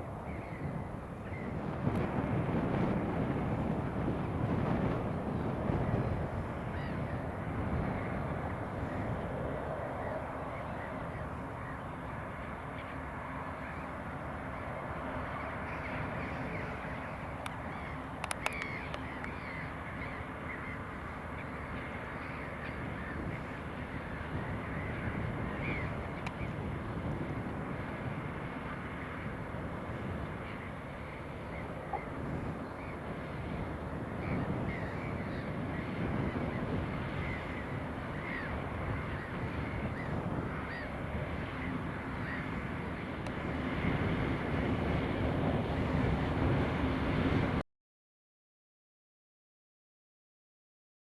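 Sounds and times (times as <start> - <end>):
birds cawing: 15.4 - 26.0, 34.1 - 43.0
sharp clicks: 18.2 - 19.4.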